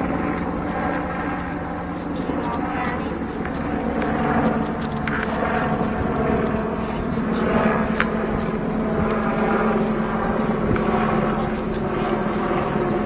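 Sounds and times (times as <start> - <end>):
engine drone: 0.0 - 13.0.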